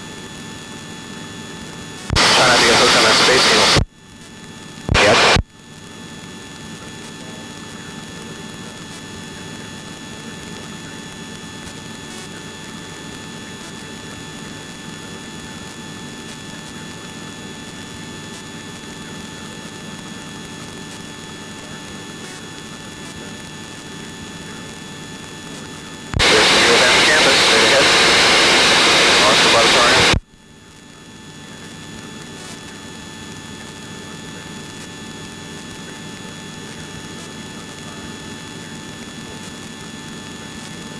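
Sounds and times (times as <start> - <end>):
faint whining tones: 26.2 - 30.2
helicopter engine and rotor: 26.2 - 30.2.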